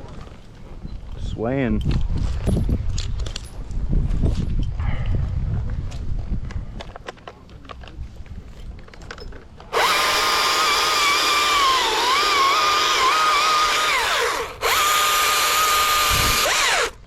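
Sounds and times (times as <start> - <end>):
electric chainsaw whining: 9.7 - 17.0.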